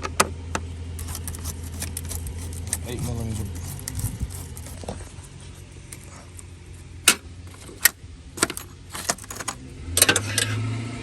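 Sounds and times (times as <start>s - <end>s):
steady low hum: 0.7s - 9.7s
hand tools clinking on metal: 7.5s - 9.6s.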